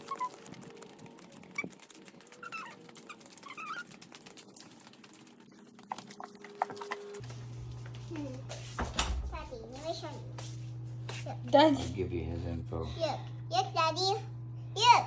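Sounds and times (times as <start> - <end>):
dog whining: 1.4 - 4.3
low steady hum: 6.2 - 15.0.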